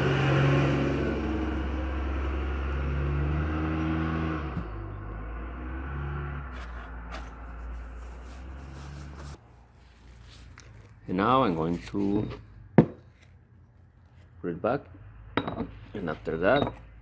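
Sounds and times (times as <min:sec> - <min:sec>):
vehicle engine running: 0:00.0 - 0:09.4.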